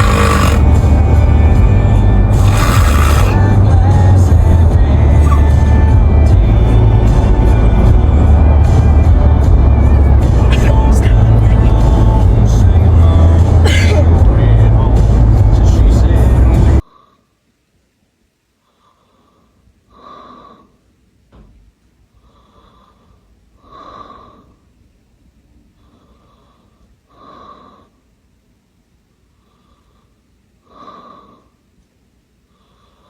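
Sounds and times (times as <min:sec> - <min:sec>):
person snoring: 0:00.0 - 0:01.1, 0:02.0 - 0:03.6.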